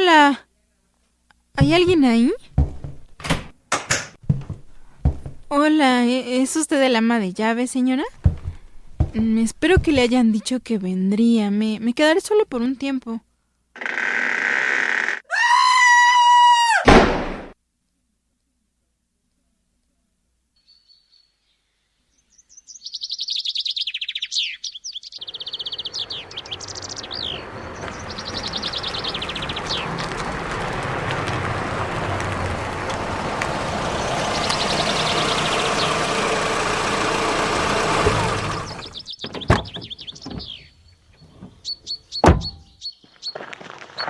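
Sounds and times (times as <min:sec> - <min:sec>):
birds chirping: 0:01.6 - 0:03.5, 0:04.3 - 0:06.2, 0:06.8 - 0:11.2, 0:20.6 - 0:44.0
car engine running: 0:01.6 - 0:03.5, 0:04.3 - 0:05.6, 0:08.1 - 0:10.3, 0:28.2 - 0:39.0
sharp knocks: 0:01.6 - 0:05.6, 0:08.1 - 0:10.3, 0:32.6 - 0:40.5, 0:42.2 - 0:42.7.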